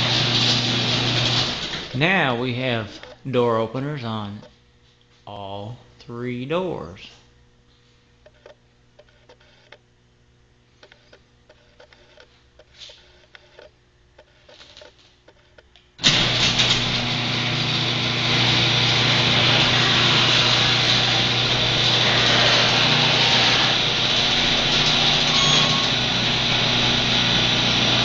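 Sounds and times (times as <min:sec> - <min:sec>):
garage door opener motor: 0:00.0 - 0:03.2, 0:10.8 - 0:28.0.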